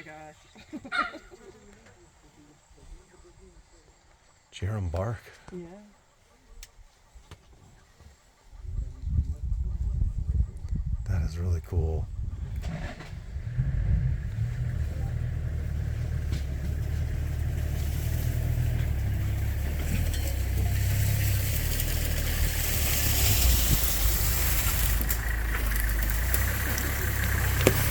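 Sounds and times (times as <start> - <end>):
vehicle engine rumbling: 6.2 - 27.9.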